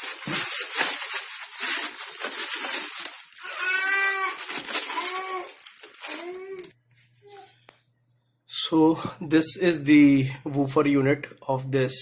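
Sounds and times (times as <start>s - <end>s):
packaging rustling and scraping: 0.0s - 7.5s.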